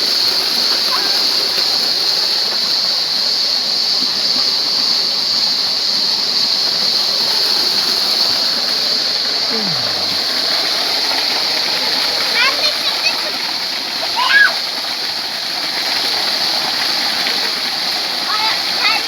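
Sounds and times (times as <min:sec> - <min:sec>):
waterfall rushing: 0:06.8 - 0:19.0.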